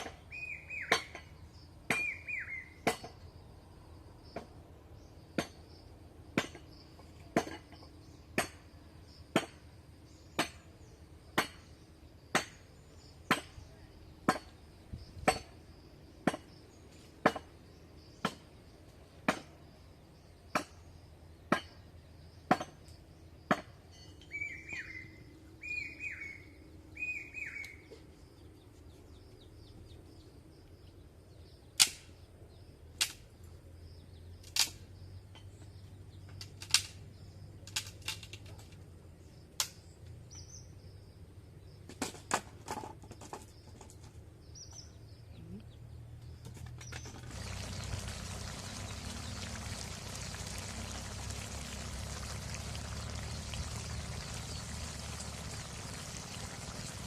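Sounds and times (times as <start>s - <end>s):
bird calling: 2.0s - 2.8s, 24.3s - 28.0s, 47.3s - 57.0s.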